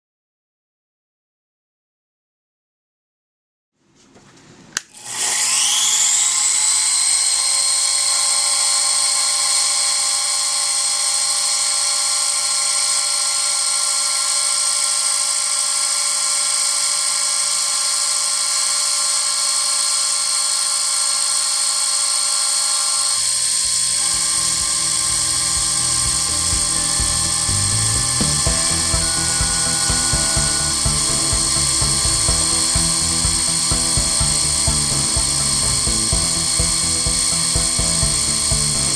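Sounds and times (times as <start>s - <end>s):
high-pitched spindle whine: 5.0s - 38.9s
short rising and falling tones: 23.2s - 38.9s
rough uneven noise: 23.8s - 38.9s.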